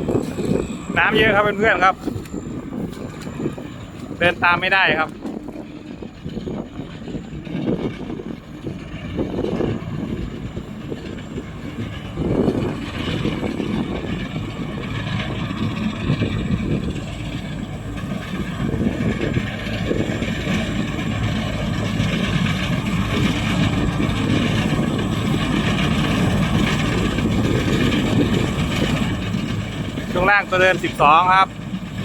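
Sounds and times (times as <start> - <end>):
combine harvester running: 0.0 - 32.0.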